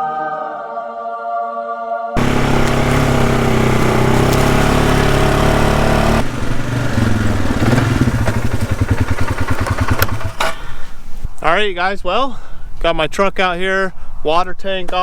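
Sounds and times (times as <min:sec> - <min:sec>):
engine idling with rapid pulse: 0:02.2 - 0:10.7
engine running steadily: 0:02.2 - 0:10.8.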